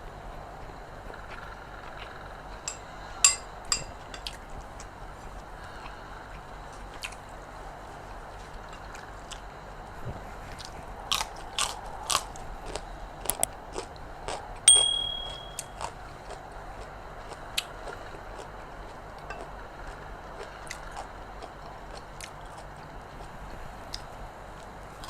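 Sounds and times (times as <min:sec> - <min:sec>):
sharp ringing clink: 0:14.7 - 0:15.7.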